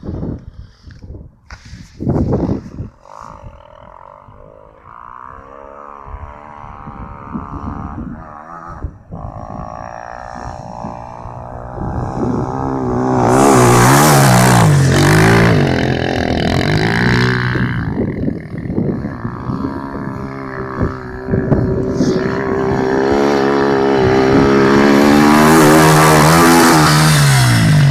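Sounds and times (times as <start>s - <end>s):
atv engine revving: 2.6s - 27.9s.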